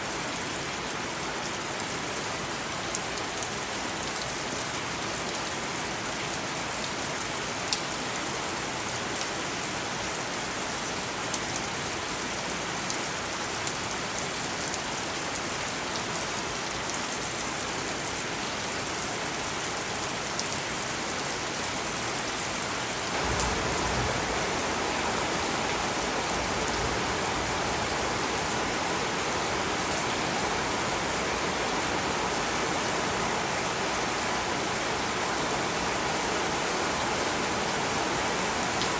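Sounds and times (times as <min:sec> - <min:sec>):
steady rain falling: 0:00.0 - 0:38.9
raindrops ticking on a surface: 0:02.8 - 0:21.9, 0:22.9 - 0:32.1.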